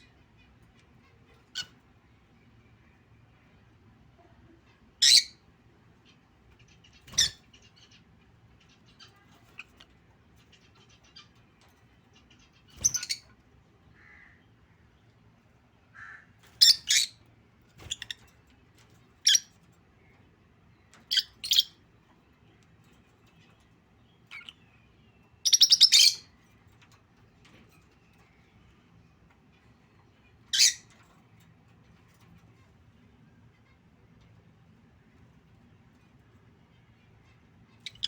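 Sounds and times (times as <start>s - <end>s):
soft bird chatter: 0.0s - 38.0s
lovebird squawks: 16.0s - 17.2s, 25.4s - 26.3s.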